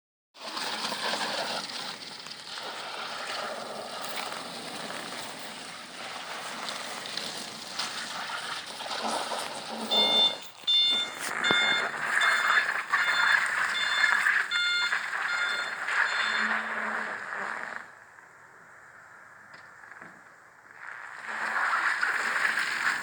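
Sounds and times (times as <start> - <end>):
reverse warning beeper: 9.8 - 17.0.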